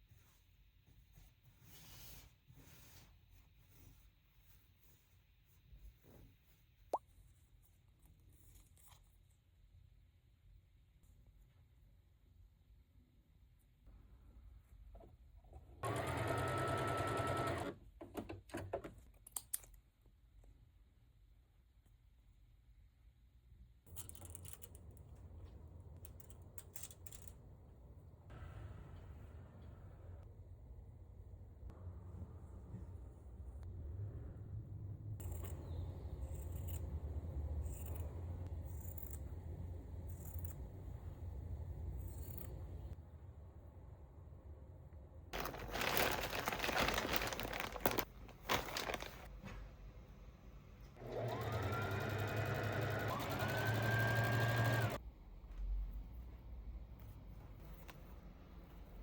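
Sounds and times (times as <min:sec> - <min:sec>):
sewing machine stitching: 0:15.8 - 0:17.8, 0:51.0 - 0:55.0.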